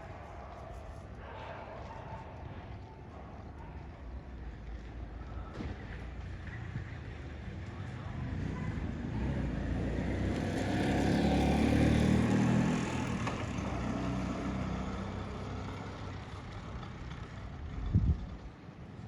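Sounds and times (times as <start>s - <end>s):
vehicle engine passing by: 8.1s - 17.4s.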